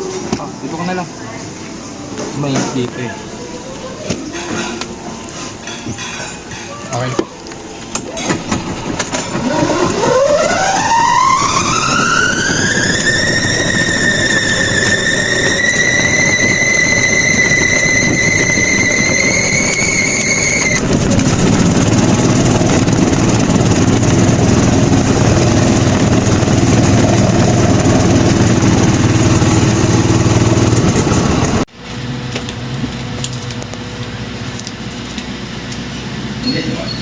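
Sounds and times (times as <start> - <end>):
engine and road noise: 0.0 - 37.0
steady high whine: 7.4 - 36.4.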